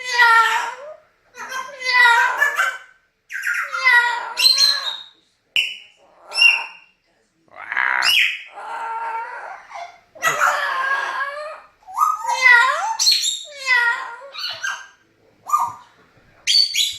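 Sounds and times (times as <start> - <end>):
dog whining and yowling: 8.6 - 14.9.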